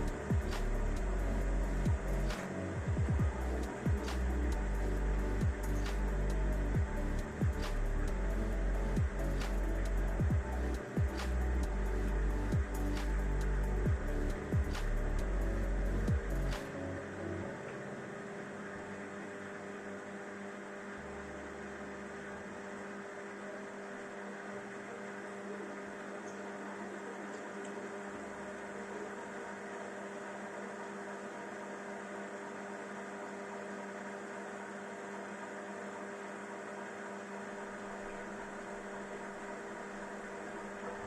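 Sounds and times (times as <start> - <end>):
low rumble: 0.0 - 16.7
washing machine motor hum: 0.0 - 41.0.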